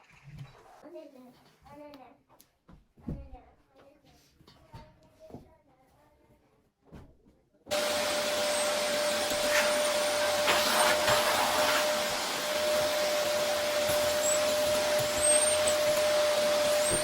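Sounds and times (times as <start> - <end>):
vacuum cleaner running: 7.7 - 17.0.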